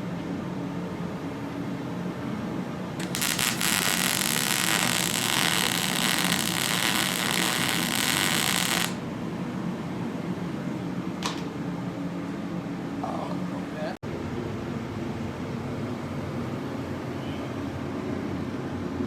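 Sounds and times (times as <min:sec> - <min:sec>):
low steady hum: 0:00.0 - 0:19.0
welding arc crackling and sizzling: 0:03.0 - 0:09.0.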